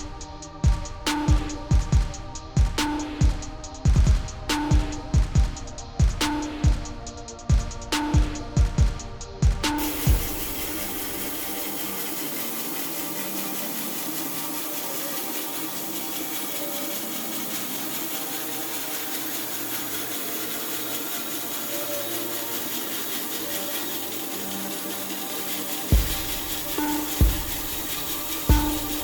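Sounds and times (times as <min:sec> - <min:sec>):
power saw cutting wood: 0:09.8 - 0:29.0.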